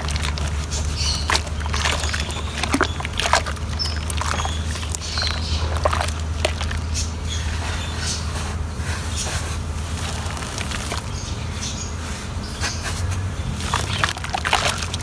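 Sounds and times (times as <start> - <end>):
cement crumbling in water: 0.0 - 7.0
steady low hum: 0.0 - 15.0.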